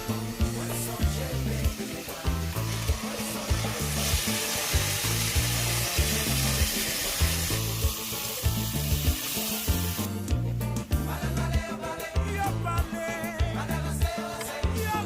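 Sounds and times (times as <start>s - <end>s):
food sizzling in hot oil: 0.0s - 10.3s
background music with bass: 0.0s - 15.0s.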